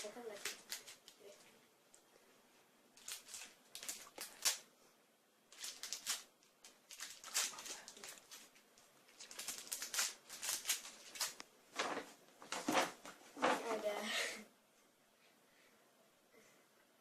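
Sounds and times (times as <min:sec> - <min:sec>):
foam toys crackling rustles: 0:00.0 - 0:01.5, 0:03.0 - 0:04.7, 0:05.5 - 0:13.9.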